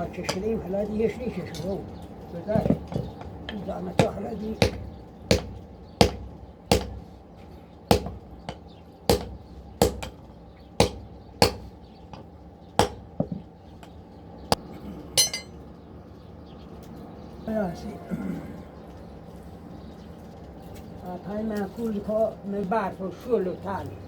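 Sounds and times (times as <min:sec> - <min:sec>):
hammer striking metal on anvil: 0:09.1 - 0:10.2, 0:10.8 - 0:11.6, 0:12.8 - 0:13.0, 0:15.2 - 0:15.6
high rattling clink: 0:15.2 - 0:15.6.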